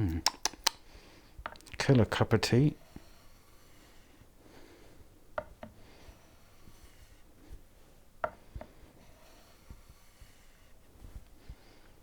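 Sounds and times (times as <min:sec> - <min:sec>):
sharp clicks: 0:00.1 - 0:00.8
chisel rubbing on whetstone: 0:02.6 - 0:04.3, 0:05.4 - 0:07.4, 0:08.6 - 0:11.2.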